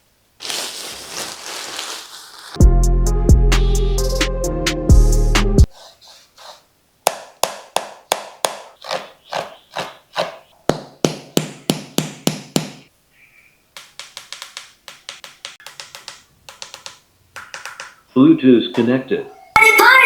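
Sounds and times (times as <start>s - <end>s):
wooden taps: 13.8s - 18.0s.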